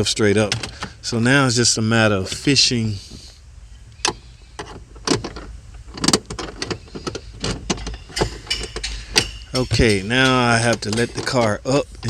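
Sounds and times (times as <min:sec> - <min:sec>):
gear shifter cable clicking: 0:03.9 - 0:11.9.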